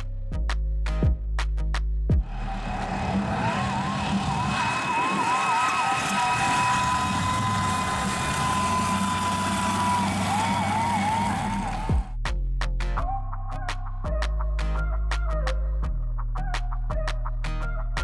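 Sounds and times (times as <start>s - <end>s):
steady noisy rush: 2.1s - 12.2s
siren yelping: 3.1s - 11.9s.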